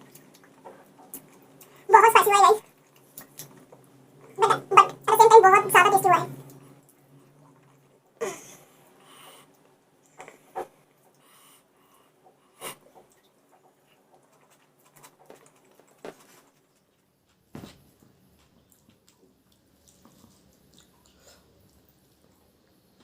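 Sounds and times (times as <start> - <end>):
wet mouth smacks while chewing: 18.7 - 21.4.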